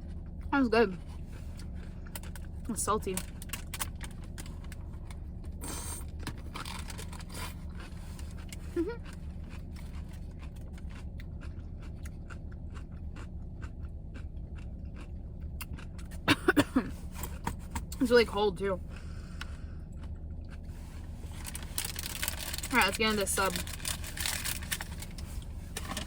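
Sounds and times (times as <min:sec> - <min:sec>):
steady low hum: 0:00.0 - 0:26.0
crunching on a pickle: 0:03.2 - 0:16.3, 0:19.3 - 0:22.9, 0:23.5 - 0:26.0.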